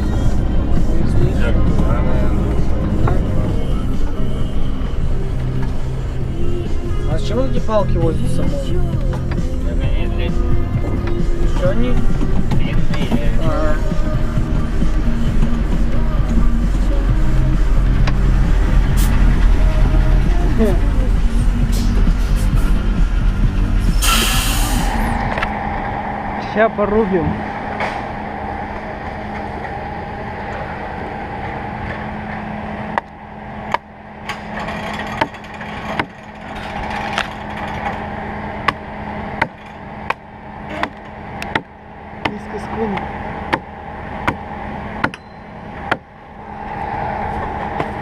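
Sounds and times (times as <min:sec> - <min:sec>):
music playing: 0:00.0 - 0:29.1
truck engine drone: 0:00.0 - 0:48.0
axe chopping wood: 0:43.5 - 0:44.4.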